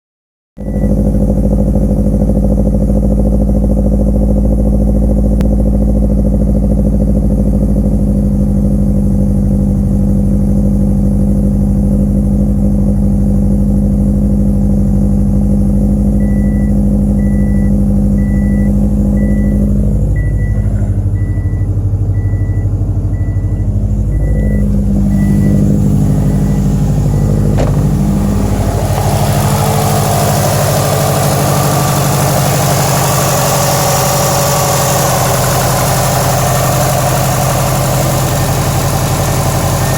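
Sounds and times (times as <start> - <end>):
car engine idling roughly: 0.6 - 39.9
faint beeping: 16.2 - 29.3.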